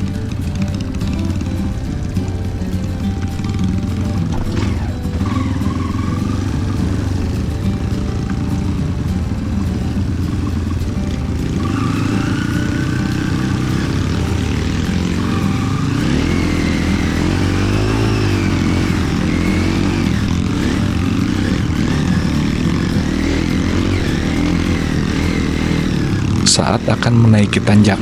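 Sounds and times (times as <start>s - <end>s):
motorcycle engine revving: 0.0s - 28.0s.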